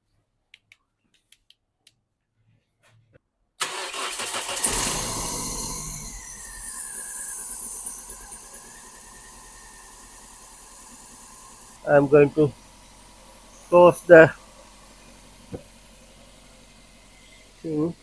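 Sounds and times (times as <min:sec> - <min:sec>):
car engine cranking and starting: 0:03.6 - 0:18.0.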